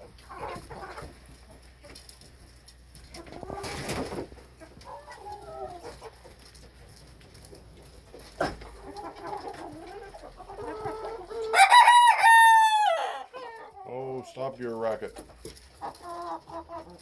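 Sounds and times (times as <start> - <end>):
chickens clucking softly: 0.0 - 17.0
rooster crowing: 11.5 - 13.3.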